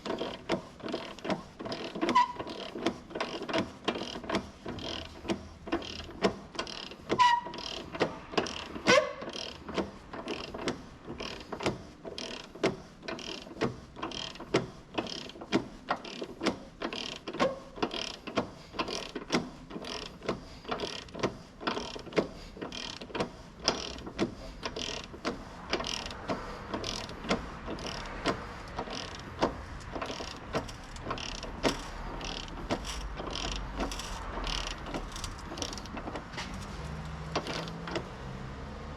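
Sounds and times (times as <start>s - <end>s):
socket ratchet clicking: 0.0s - 38.1s
short squeaks: 1.0s - 3.4s, 6.7s - 9.6s, 17.0s - 18.2s.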